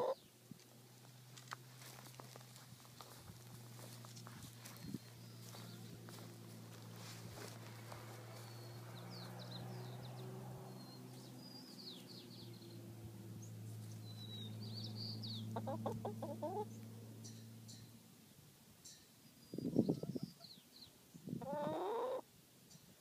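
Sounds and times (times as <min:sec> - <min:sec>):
chickens clucking: 0:00.0 - 0:00.2, 0:15.3 - 0:16.8, 0:19.8 - 0:20.6, 0:21.4 - 0:22.2
steady low hum: 0:00.2 - 0:18.9.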